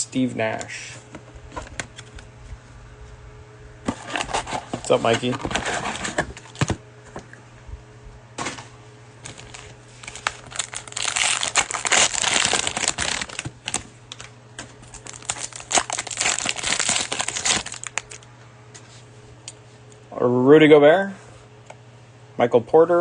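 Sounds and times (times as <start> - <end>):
plastic wrapper crinkling: 9.2 - 18.3.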